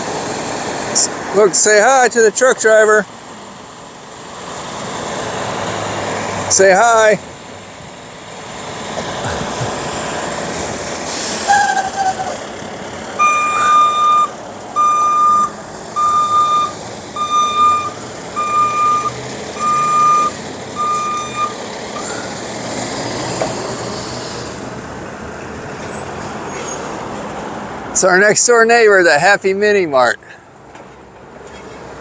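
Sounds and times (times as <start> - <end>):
truck engine running: 0.0 - 28.2
short hiss: 10.6 - 11.6
reversing alarm beeping: 13.2 - 21.6.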